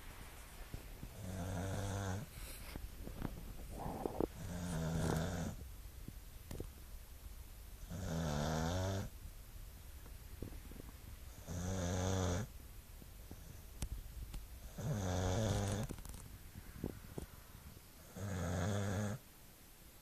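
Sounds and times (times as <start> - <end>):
dog snoring: 1.1 - 2.8, 3.6 - 5.6, 7.8 - 9.1, 11.3 - 12.5, 14.6 - 16.1, 18.0 - 19.2.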